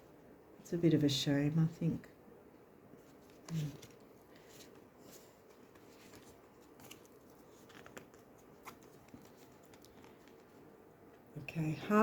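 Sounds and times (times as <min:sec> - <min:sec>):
cards clicking and tapping: 0:05.7 - 0:10.5.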